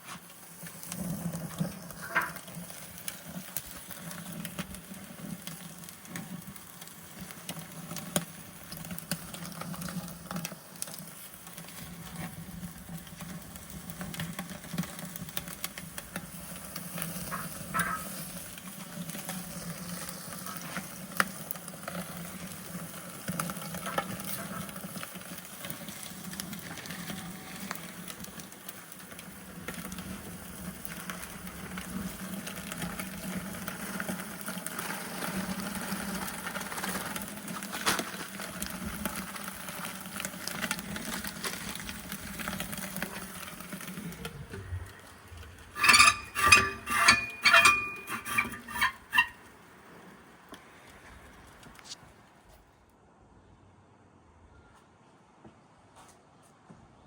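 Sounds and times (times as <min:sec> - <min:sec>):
food sizzling: 0:00.0 - 0:49.4
loud short ringing strokes: 0:45.8 - 0:49.3.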